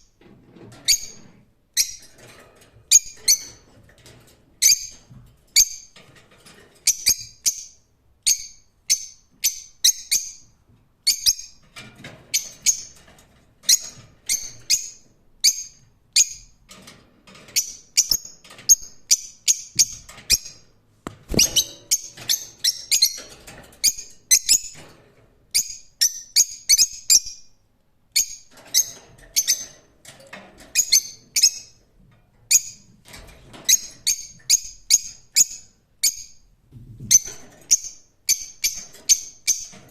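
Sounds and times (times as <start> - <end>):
lovebirds chirping: 21.2 - 23.2.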